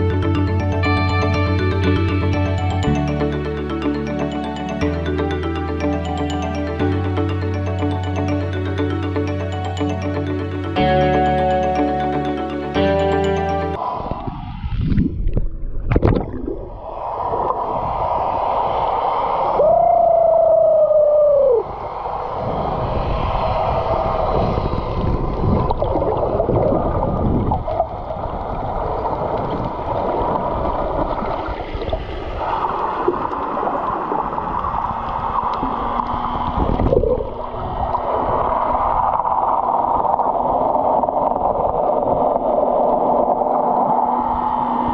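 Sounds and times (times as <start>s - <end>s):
water splashing against hull: 14.8s - 18.8s, 23.8s - 44.9s.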